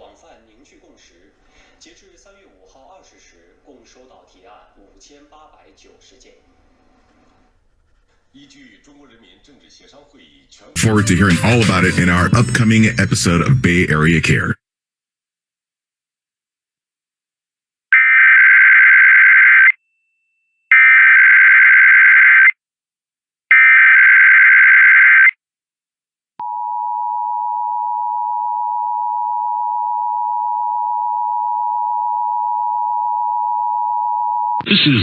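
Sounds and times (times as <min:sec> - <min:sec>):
two-tone attention signal: 0:10.8 - 0:14.4.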